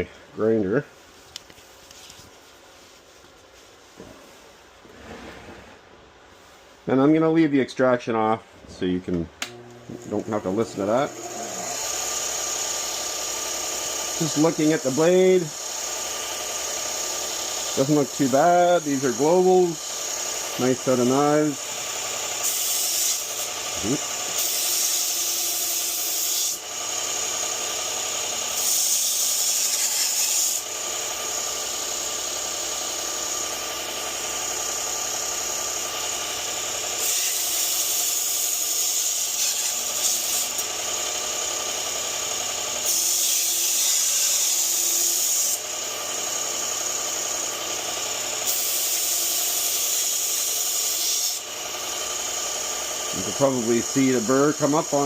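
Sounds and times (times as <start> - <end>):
belt grinder running: 9.5 - 55.0
knife blade grinding hiss: 48.4 - 51.5.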